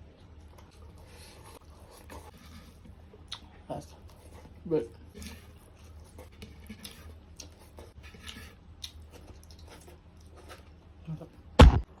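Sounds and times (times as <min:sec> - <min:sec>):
person chewing: 0:00.2 - 0:11.8
loud thump: 0:11.6 - 0:12.0.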